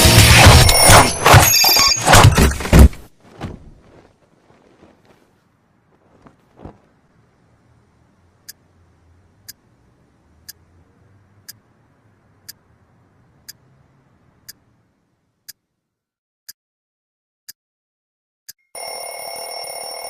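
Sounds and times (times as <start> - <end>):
faint low hum: 3.8 - 15.5.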